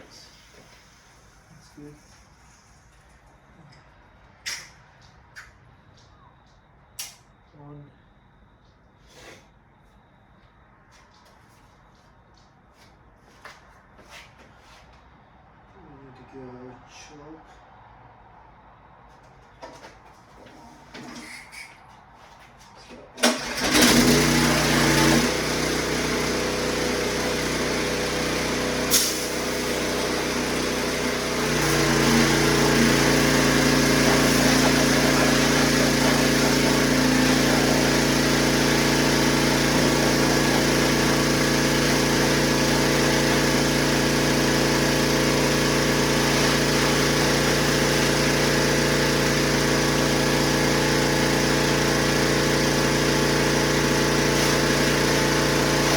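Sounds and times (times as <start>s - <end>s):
sharp click: 4.4s - 4.8s, 7.0s - 7.3s
pressure washer running: 23.2s - 55.9s.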